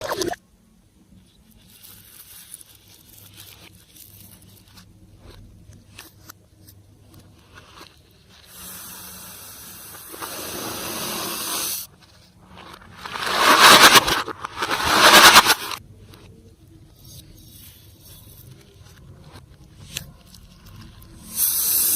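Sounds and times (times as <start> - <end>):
air hissing out through slime: 8.5 - 11.9, 21.3 - 21.9.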